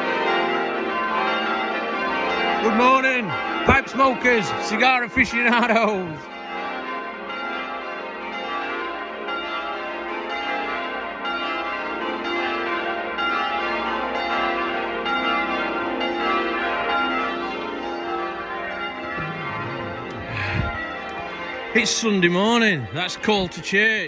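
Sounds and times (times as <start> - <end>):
church bells ringing: 0.0 - 18.1.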